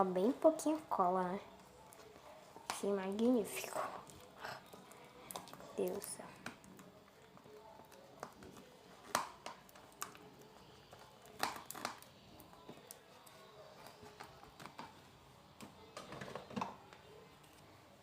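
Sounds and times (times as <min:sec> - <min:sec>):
slime clicking and squelching: 0:04.0 - 0:13.4.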